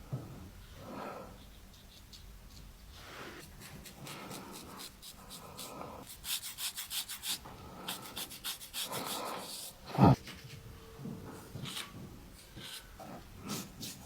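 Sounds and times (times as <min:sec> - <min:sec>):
soft slow breathing: 0:00.0 - 0:01.6, 0:02.9 - 0:06.1
razor scraping stubble: 0:03.3 - 0:10.6, 0:11.3 - 0:14.0.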